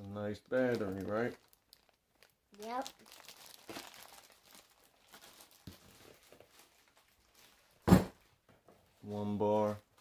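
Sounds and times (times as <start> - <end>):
packaging rustling: 0.0 - 7.8.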